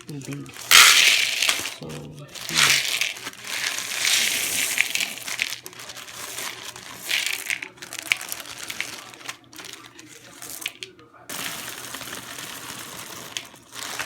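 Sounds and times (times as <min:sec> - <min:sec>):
bag crinkling: 0:00.0 - 0:14.0
dry beans rattling: 0:00.0 - 0:14.0.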